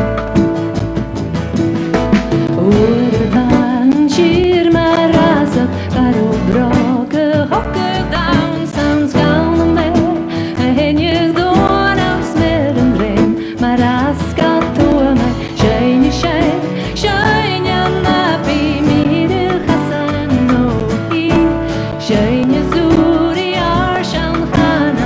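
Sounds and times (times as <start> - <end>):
folk band playing: 0.0 - 25.0
woman singing: 2.4 - 25.0.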